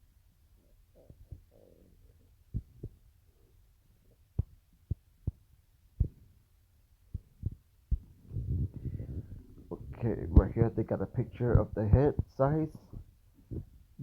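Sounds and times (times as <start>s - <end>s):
soft low thumps: 2.5s - 3.0s, 4.3s - 6.4s, 7.1s - 13.9s
low rumble: 7.9s - 10.8s.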